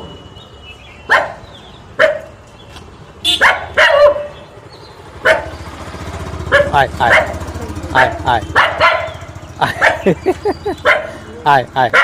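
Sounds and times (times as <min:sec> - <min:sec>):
dog barking: 0:01.1 - 0:02.3, 0:03.3 - 0:04.4, 0:05.2 - 0:05.6, 0:06.4 - 0:10.2, 0:10.8 - 0:11.2.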